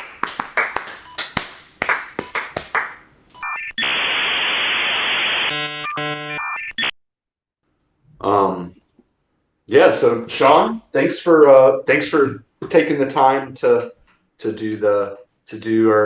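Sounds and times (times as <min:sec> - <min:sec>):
people clapping: 0:00.0 - 0:03.1
static-like hiss: 0:03.1 - 0:06.4
electronic buzzing tone: 0:03.4 - 0:06.9.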